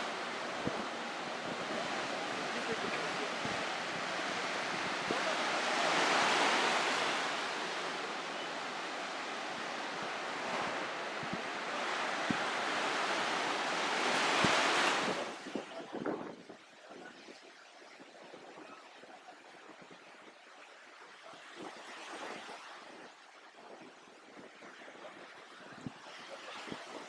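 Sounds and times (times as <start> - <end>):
wind buffeting microphone: 0.0 - 13.4
sea waves breaking: 0.0 - 16.3.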